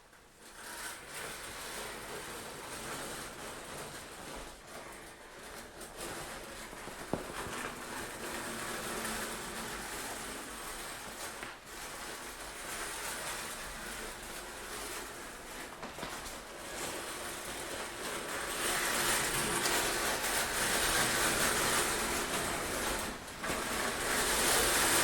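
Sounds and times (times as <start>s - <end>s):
shower curtain swishing on rod: 0.4s - 25.0s.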